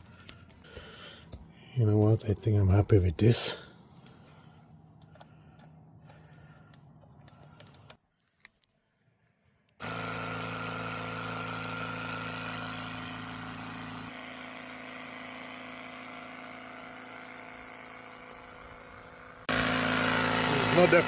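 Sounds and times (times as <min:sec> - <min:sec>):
air compressor humming: 0:09.8 - 0:21.0.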